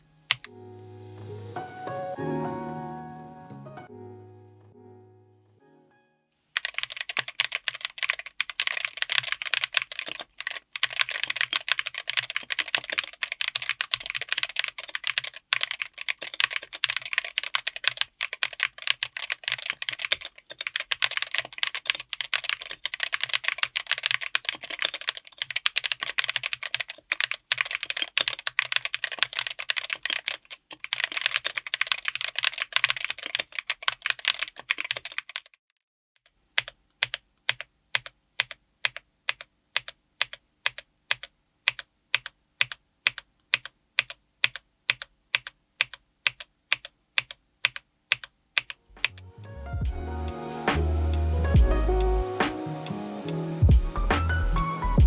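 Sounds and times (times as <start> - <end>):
mechanical keyboard typing: 0.3 - 0.5, 6.6 - 35.6, 36.6 - 49.2.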